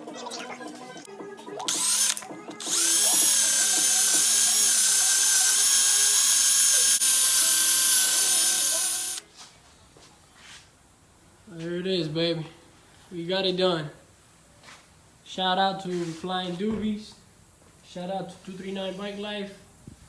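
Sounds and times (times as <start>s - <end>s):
background music: 0.0s - 4.8s
power tool motor whining: 1.7s - 9.2s.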